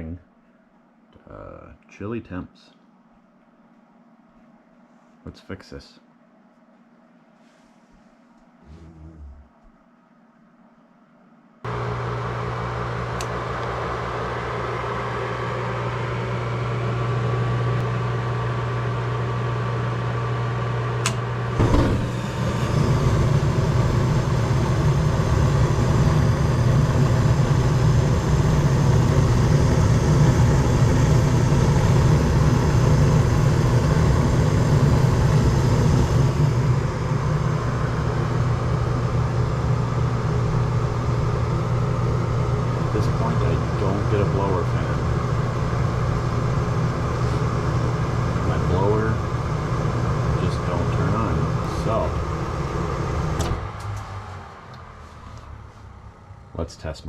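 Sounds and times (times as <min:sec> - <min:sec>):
draft inducer motor humming: 0:11.7 - 0:55.6.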